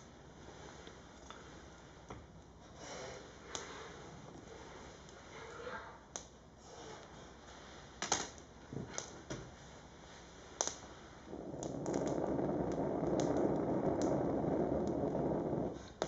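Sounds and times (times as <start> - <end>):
fire crackling and popping: 0.0 - 5.4, 6.1 - 16.0
steady rushing noise: 11.2 - 16.0.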